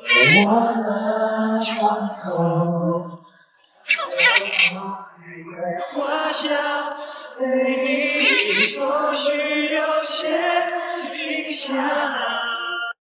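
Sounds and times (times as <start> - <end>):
person singing long notes: 0.0 - 3.1, 7.8 - 8.9.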